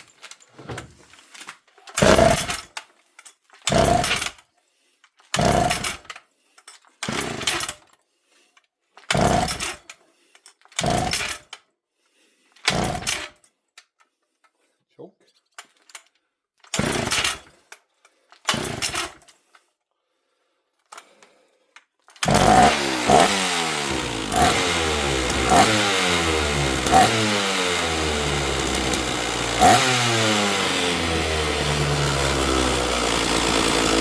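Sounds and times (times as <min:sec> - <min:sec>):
starter cord pulls: 0:00.0 - 0:02.9, 0:03.5 - 0:04.4, 0:05.2 - 0:06.2, 0:07.0 - 0:07.9, 0:09.0 - 0:10.0, 0:10.6 - 0:11.6, 0:12.6 - 0:13.4, 0:15.7 - 0:17.5, 0:18.4 - 0:19.3, 0:22.0 - 0:34.0
chainsaw engine running: 0:02.0 - 0:02.7, 0:03.7 - 0:04.3, 0:05.4 - 0:06.0, 0:07.1 - 0:07.7, 0:09.1 - 0:09.8, 0:10.8 - 0:11.4, 0:12.7 - 0:13.2, 0:16.8 - 0:17.4, 0:18.5 - 0:19.1, 0:22.2 - 0:34.0.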